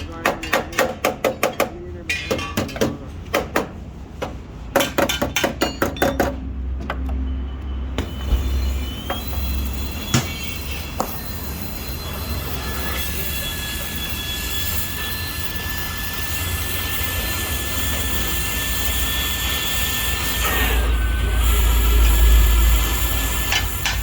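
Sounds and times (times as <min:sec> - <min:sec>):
high squeal: 0:07.2 - 0:24.0.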